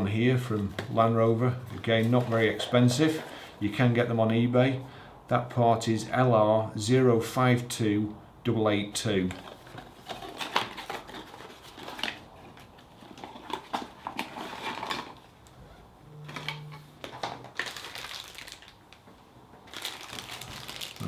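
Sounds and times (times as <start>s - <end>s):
plastic packaging rustling: 0.4s - 3.7s, 9.2s - 15.6s, 16.3s - 21.0s
low hum: 16.0s - 17.0s.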